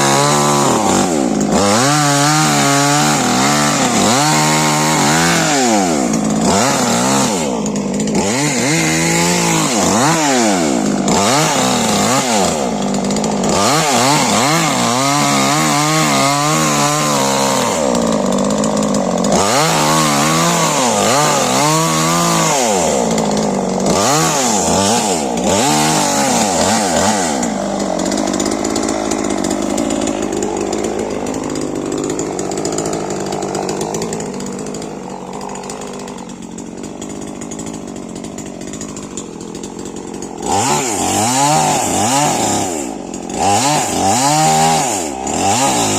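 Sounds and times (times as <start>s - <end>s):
chainsaw revving: 0.0s - 45.9s.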